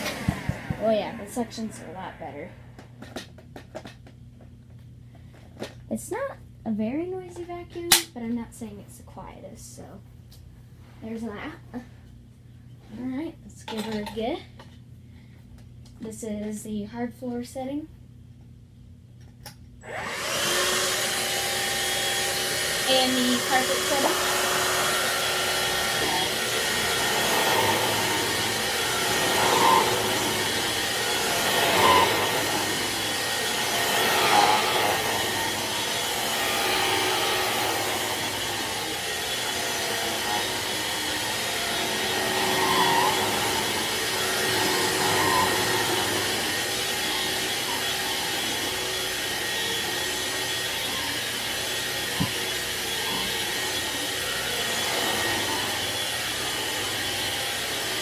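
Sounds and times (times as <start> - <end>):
vacuum cleaner motor whine: 0.0 - 3.2, 19.8 - 58.0.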